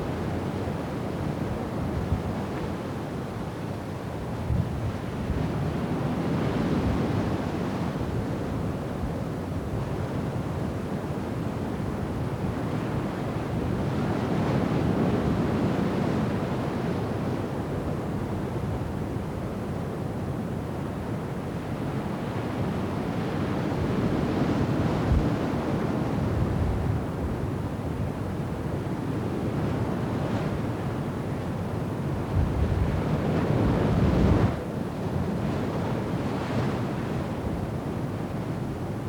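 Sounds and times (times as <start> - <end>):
rough sea and breaking waves: 0.0 - 39.0
wind blowing on microphone: 32.2 - 34.6.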